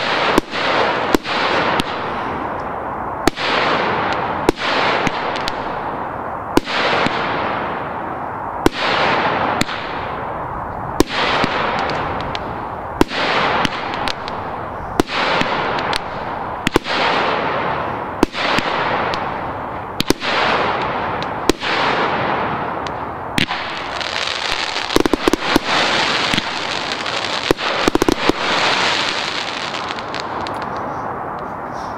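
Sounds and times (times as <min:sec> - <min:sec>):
firework bangs: 0:00.0 - 0:31.9
firework hiss: 0:11.0 - 0:31.1.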